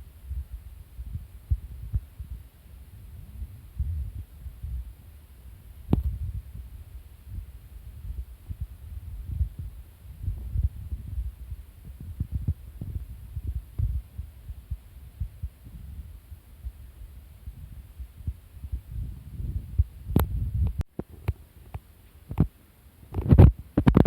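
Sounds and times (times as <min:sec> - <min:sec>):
low rumbling and dull thuds: 0:00.0 - 0:22.5.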